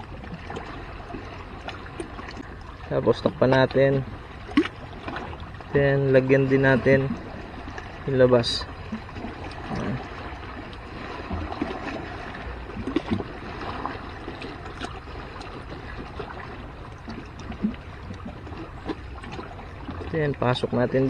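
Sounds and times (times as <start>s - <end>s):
water at the shore: 0.0s - 21.0s
wind: 0.0s - 21.0s.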